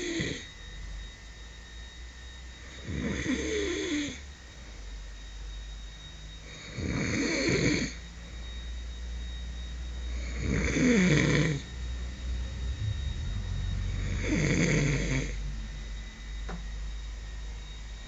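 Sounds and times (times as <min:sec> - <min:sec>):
man snoring: 0:00.0 - 0:00.5, 0:02.8 - 0:04.2, 0:06.5 - 0:08.0, 0:10.2 - 0:11.7, 0:13.9 - 0:15.4.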